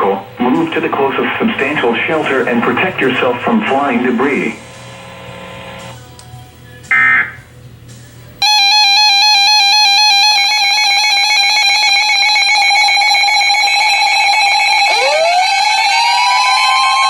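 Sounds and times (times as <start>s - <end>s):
warbling electronic alert tones: 6.9s - 7.4s, 8.4s - 16.5s
tone sweeping up in pitch: 8.4s - 17.0s.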